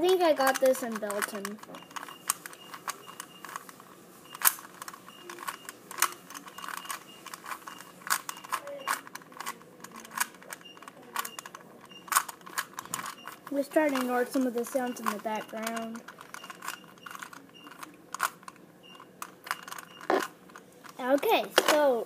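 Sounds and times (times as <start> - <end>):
plastic cube clicking: 0.4 - 18.6.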